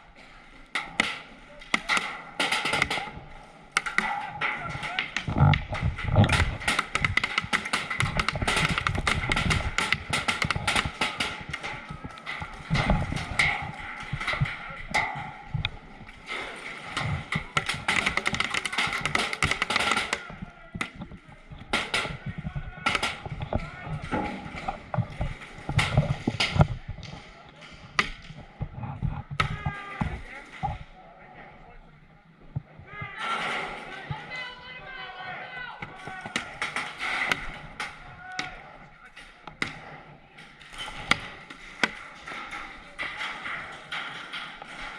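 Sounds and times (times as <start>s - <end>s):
paintball markers firing: 0.8s - 14.5s, 16.8s - 23.4s
players shouting: 16.5s - 25.2s, 29.4s - 30.5s, 32.8s - 39.1s.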